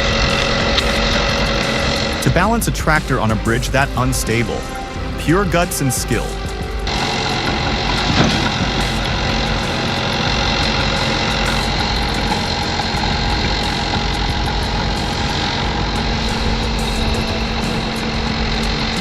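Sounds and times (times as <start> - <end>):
heavy vehicle engine running: 0.0 - 19.0.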